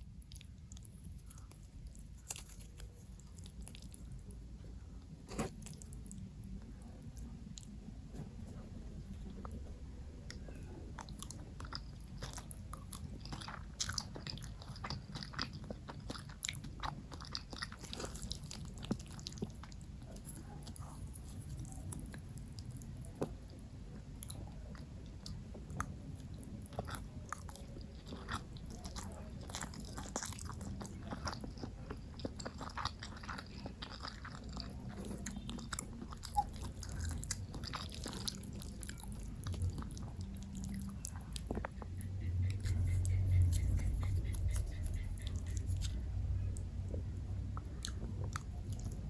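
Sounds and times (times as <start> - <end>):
chewing and crunching food: 0.0 - 49.0
low rumble: 36.3 - 49.0.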